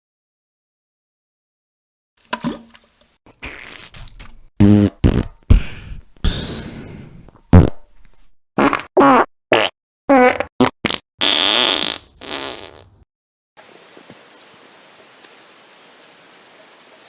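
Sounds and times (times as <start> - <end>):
fart sound effects: 3.4 - 4.0, 4.6 - 8.0, 8.6 - 13.0.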